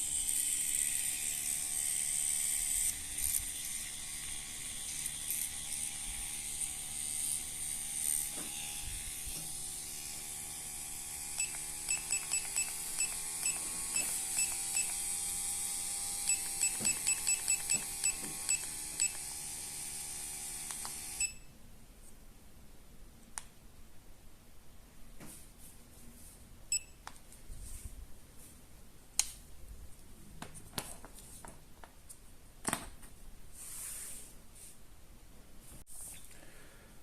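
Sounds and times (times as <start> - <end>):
tattoo machine motor running: 0.0 - 21.2
short electronic beeps: 11.4 - 15.0, 16.3 - 19.2, 26.7 - 27.0.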